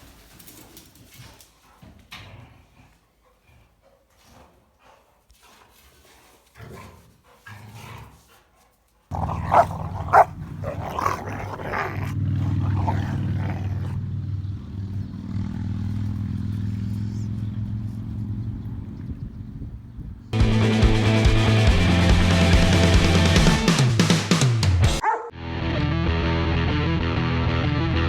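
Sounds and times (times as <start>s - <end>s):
dog growling low: 6.0s - 8.3s, 9.1s - 18.9s
dogs barking: 9.1s - 18.0s, 25.0s - 25.3s.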